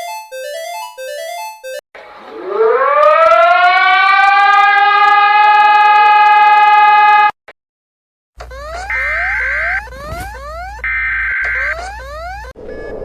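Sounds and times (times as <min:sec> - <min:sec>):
emergency alert siren: 0:02.0 - 0:07.4, 0:08.5 - 0:13.0.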